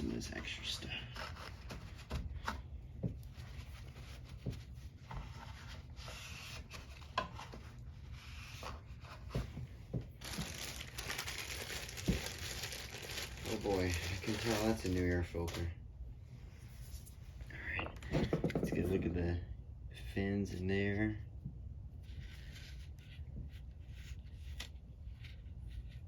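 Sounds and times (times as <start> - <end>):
crinkling and rustling of parts: 8.6 - 15.8.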